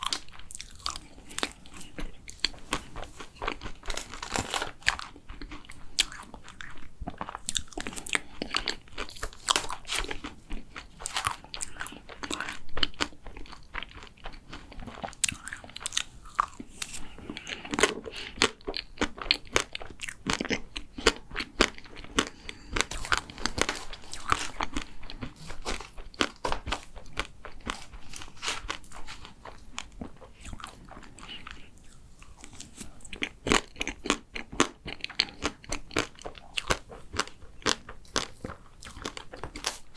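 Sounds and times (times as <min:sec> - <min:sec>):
chewing crunchy food: 0:00.0 - 0:39.9.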